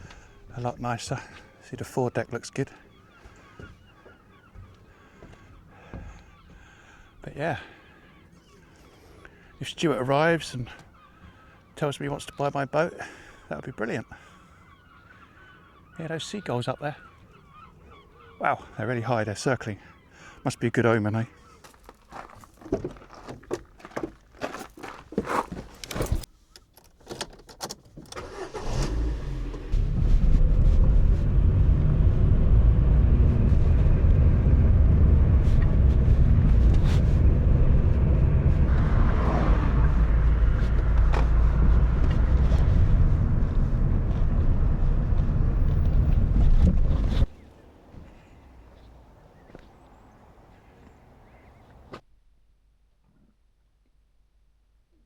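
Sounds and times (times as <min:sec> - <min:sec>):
car rumbling: 0:28.1 - 0:52.0.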